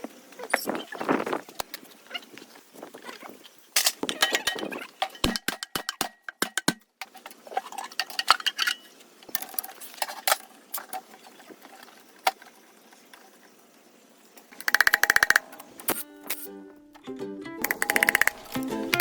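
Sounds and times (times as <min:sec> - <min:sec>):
rapid rattle of clicks: 0:14.4 - 0:15.8, 0:17.6 - 0:19.0
metallic clinks of tools and parts: 0:14.5 - 0:19.0.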